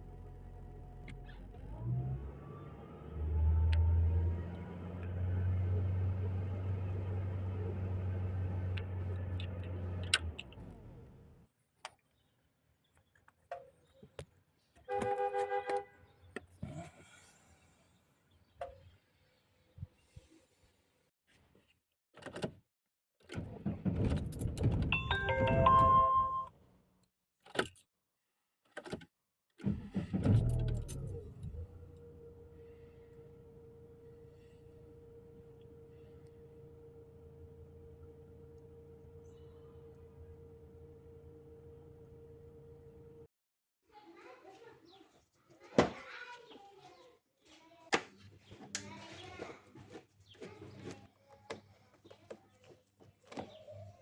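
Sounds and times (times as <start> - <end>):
car engine cranking and idling: 0.0 - 11.5, 23.4 - 26.5, 29.6 - 43.3
car engine idling: 30.6 - 43.3.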